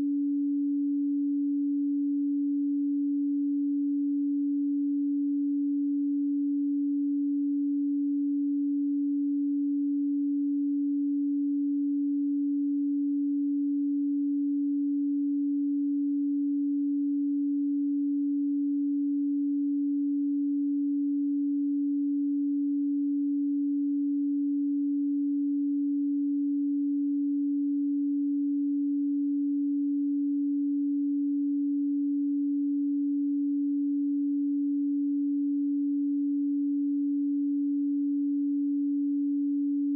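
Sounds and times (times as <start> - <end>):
steady sine tone: 0.0 - 39.9.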